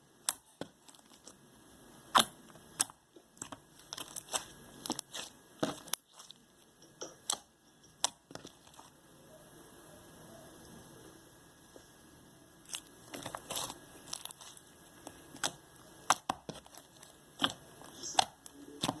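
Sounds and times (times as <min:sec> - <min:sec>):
slime squished by hand: 0:02.1 - 0:06.4, 0:12.6 - 0:19.0.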